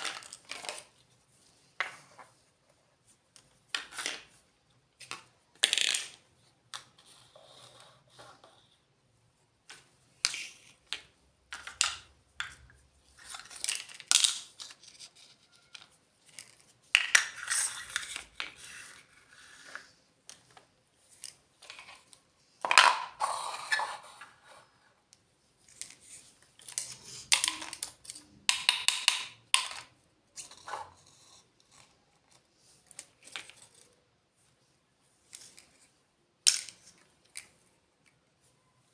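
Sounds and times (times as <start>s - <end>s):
toy pieces clicking and tapping: 26.6s - 30.6s.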